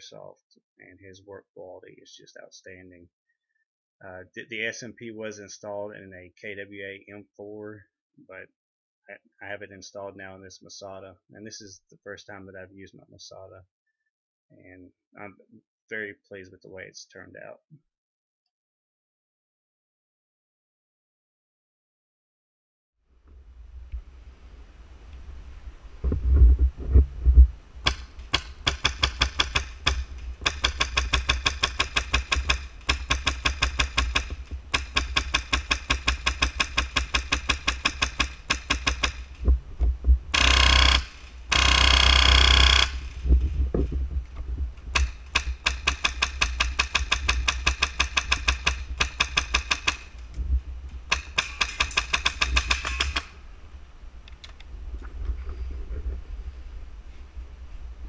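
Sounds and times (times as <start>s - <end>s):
airsoft rifle full-auto bursts: 27.9s - 39.3s, 40.4s - 43.2s, 45.0s - 50.1s, 51.1s - 53.3s
heavy thumps: 42.7s - 49.6s.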